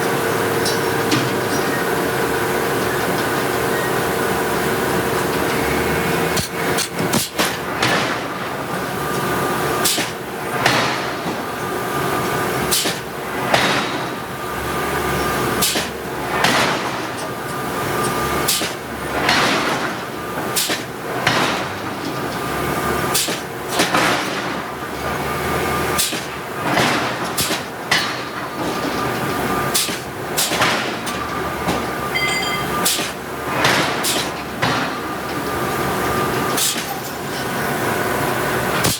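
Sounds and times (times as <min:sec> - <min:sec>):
machinery hum: 0:00.0 - 0:23.7, 0:24.4 - 0:38.9
forging hammer striking steel: 0:06.3 - 0:08.8, 0:32.0 - 0:35.1
metallic ring: 0:32.1 - 0:33.0.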